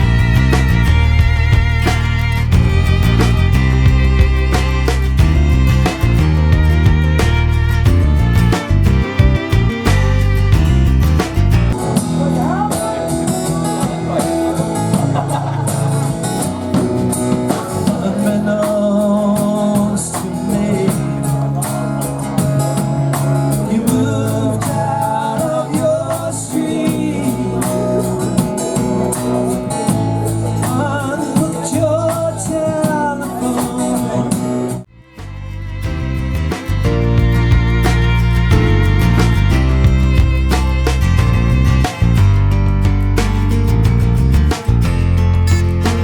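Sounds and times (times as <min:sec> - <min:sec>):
guitar: 0:00.0 - 0:46.0
person singing: 0:17.4 - 0:34.9.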